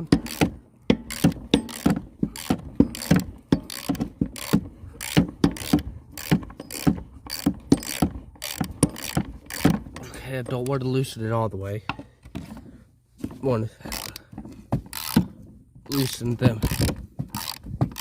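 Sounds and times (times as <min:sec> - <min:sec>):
socket ratchet clicking: 0:00.1 - 0:09.8, 0:13.9 - 0:14.2, 0:14.9 - 0:15.2, 0:15.9 - 0:18.0.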